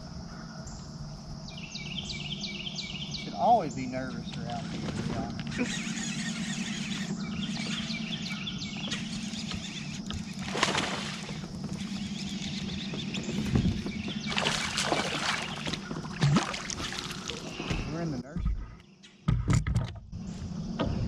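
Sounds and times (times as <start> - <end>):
steady low hum: 0.0 - 21.0
water splashing: 10.3 - 12.0, 14.1 - 17.6.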